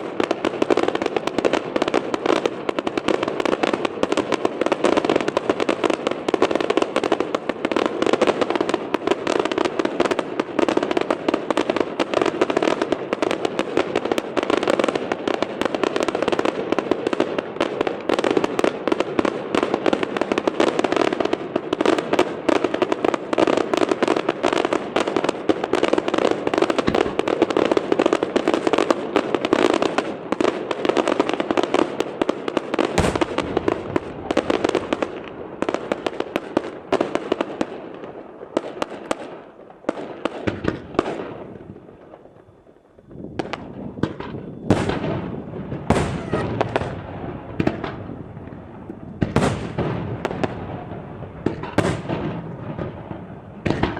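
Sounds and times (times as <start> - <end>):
fireworks bursting and crackling: 0.0 - 53.9
deep firework boom: 33.0 - 35.3, 43.0 - 53.9.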